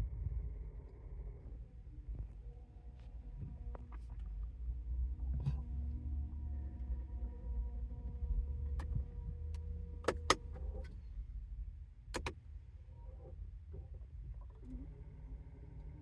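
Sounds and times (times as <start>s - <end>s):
car engine low rumble: 0.0s - 16.0s
faint steady hum: 0.0s - 16.0s
sharp clicks: 12.1s - 12.4s.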